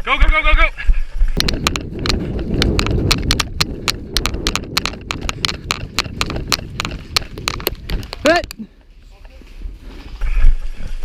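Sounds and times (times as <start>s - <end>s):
running footsteps in snow: 0.9s - 11.0s
clothing and gear rumble: 1.0s - 11.0s
sharp clicks and snaps: 1.4s - 8.6s.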